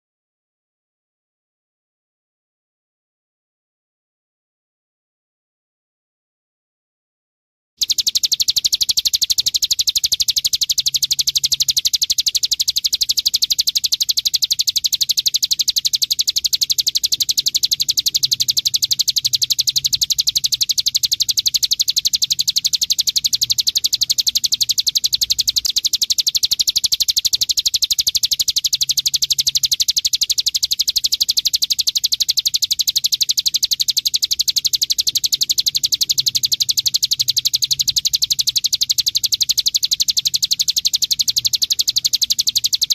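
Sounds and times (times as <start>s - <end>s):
bird fast rattle of high chirps: 7.8s - 42.9s.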